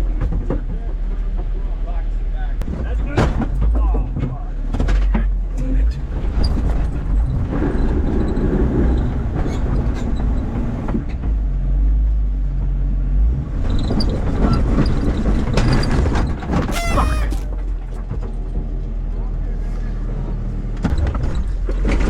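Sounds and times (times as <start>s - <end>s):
off-road vehicle rumbling: 0.0s - 22.0s
falling squeal: 16.6s - 17.7s.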